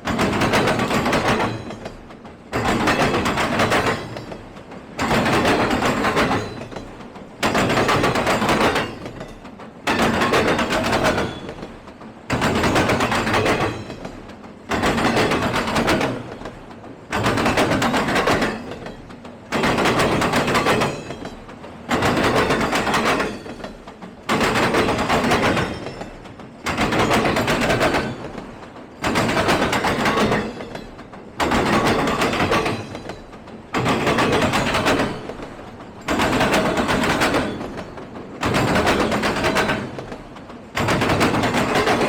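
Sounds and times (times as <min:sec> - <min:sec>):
train wheels clattering on track: 0:00.0 - 0:42.0.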